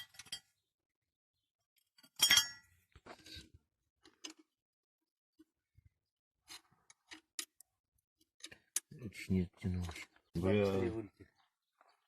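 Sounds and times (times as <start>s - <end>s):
metal tools clinking: 2.0s - 2.7s.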